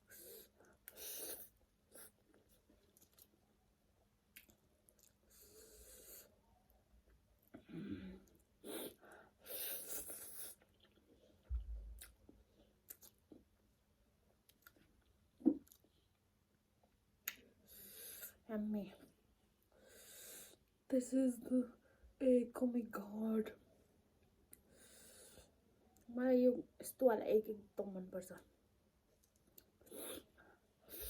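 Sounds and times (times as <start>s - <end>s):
chewing and wet mouth clicks: 2.6s - 3.4s, 4.3s - 5.3s, 12.0s - 13.4s, 14.3s - 15.9s, 17.2s - 17.4s, 29.1s - 29.8s.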